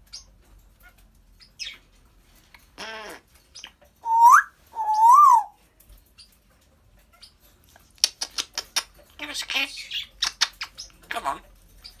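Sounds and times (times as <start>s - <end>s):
parrot whistling: 4.0s - 5.5s.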